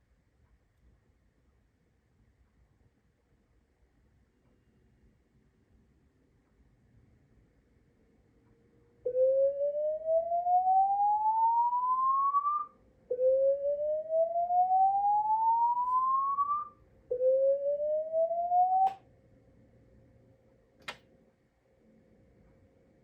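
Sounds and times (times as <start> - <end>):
slow-whoop evacuation alarm: 8.9 - 19.1
click: 20.8 - 21.1.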